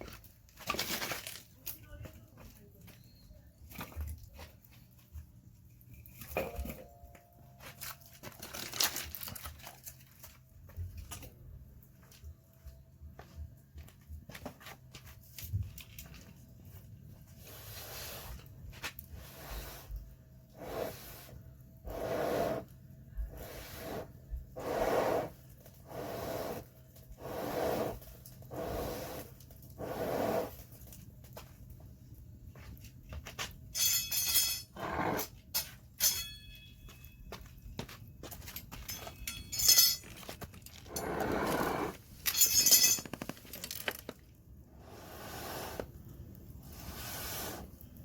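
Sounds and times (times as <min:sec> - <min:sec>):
sharp ringing clinks: 0:33.8 - 0:34.8, 0:35.6 - 0:37.4, 0:38.7 - 0:40.3, 0:42.2 - 0:43.1
wood fire crackling: 0:43.0 - 0:48.0.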